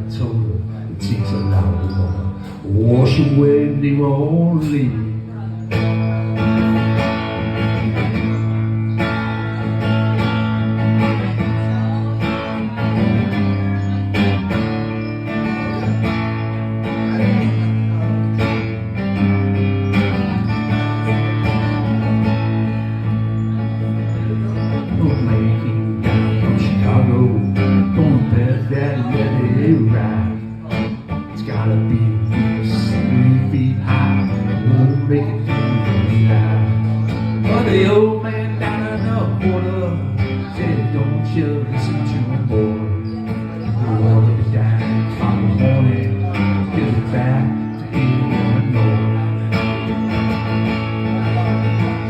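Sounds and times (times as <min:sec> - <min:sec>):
low bass notes: 0:00.0 - 0:52.0
plucked and strummed guitars: 0:00.0 - 0:52.0.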